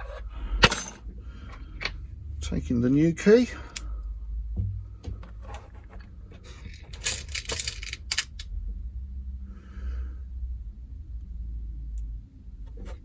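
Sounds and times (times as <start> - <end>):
steady low hum: 0.0 - 13.0
metallic clicks of lock parts: 6.7 - 8.5.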